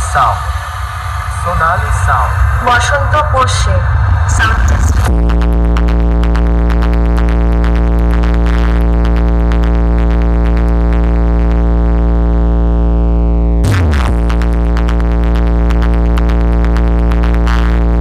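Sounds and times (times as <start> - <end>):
sweeping burst: 0.0 - 6.8
deep bass tone: 0.0 - 18.0
electronic dance music: 0.0 - 18.0.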